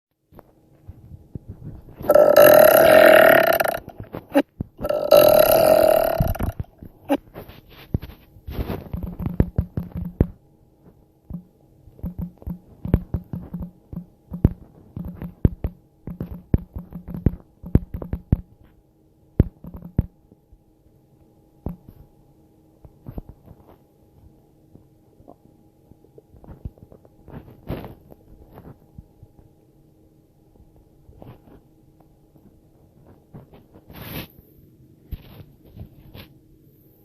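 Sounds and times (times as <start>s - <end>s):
woman burping: 2.1s - 7.2s.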